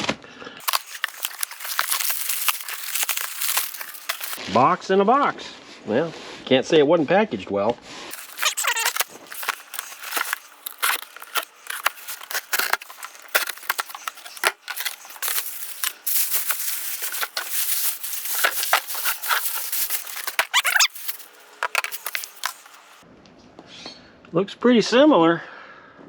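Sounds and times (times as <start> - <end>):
cardboard and packing rustling: 0.6 - 4.4, 8.1 - 23.0
short squeaks: 8.1 - 23.0.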